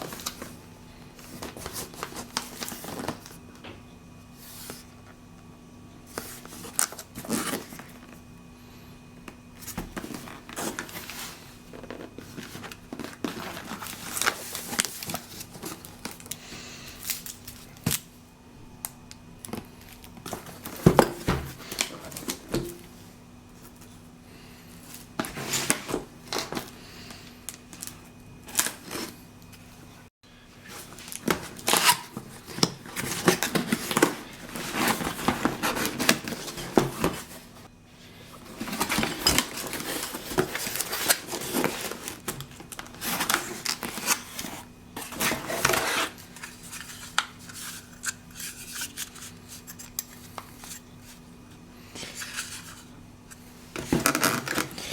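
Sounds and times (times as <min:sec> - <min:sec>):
cardboard packaging rustling and tearing: 0:01.2 - 0:03.4, 0:06.1 - 0:08.2, 0:09.5 - 0:16.4, 0:24.9 - 0:26.8, 0:27.5 - 0:29.2, 0:30.6 - 0:51.2, 0:53.7 - 0:54.9.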